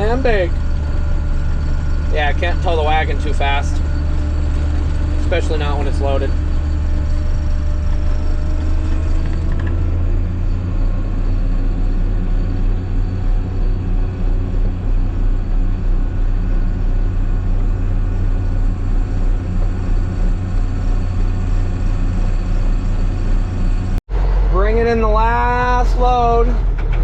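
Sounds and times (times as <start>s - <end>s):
tractor engine droning: 0.0s - 27.0s.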